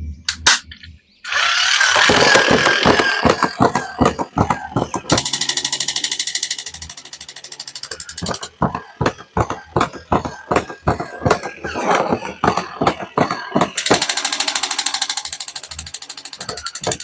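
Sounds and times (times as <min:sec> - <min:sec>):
fast mechanical rattle: 0:01.3 - 0:17.0
small hard objects clicking: 0:01.9 - 0:08.7, 0:12.4 - 0:17.0.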